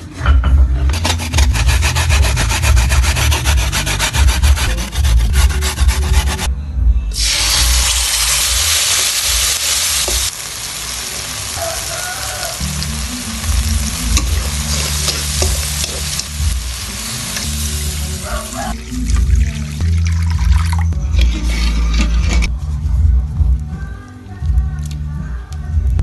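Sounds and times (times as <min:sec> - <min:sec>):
food sizzling in hot oil: 0:07.2 - 0:18.8
soft background music: 0:10.9 - 0:26.0.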